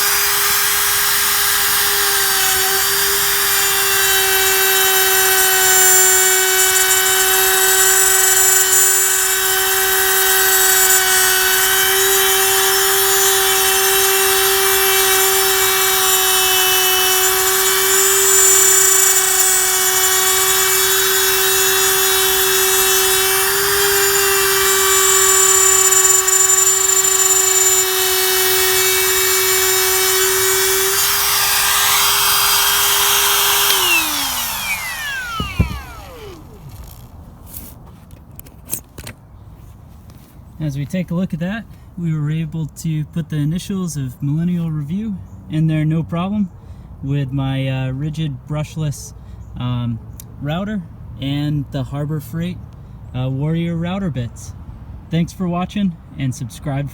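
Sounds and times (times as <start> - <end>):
router whining while cutting wood: 0.0 - 37.1.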